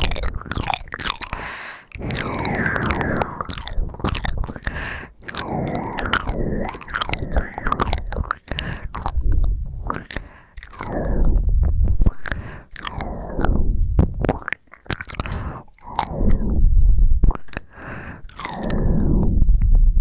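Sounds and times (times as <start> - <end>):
wet mouth clicks and lip smacks: 0.0 - 19.4
heavy breathing into microphone: 1.2 - 13.8, 15.2 - 16.6, 17.6 - 19.3.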